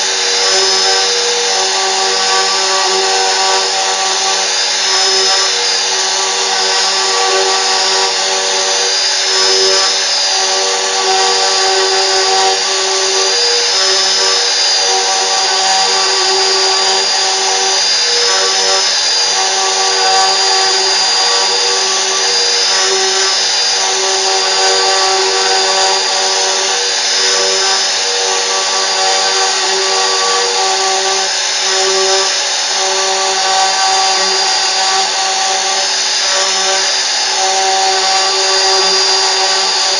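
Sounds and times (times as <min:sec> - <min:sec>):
cnc router spindle whining: 0:00.0 - 0:39.9.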